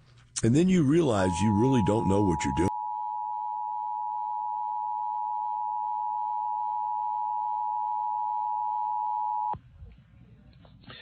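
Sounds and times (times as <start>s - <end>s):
two-tone alert signal: 1.3s - 4.0s.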